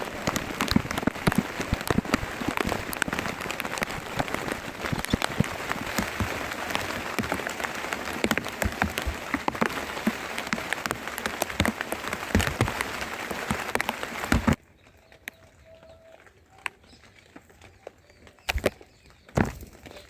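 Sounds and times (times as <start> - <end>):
heavy rain falling: 0.0 - 14.6
raindrops striking close by: 0.0 - 20.0.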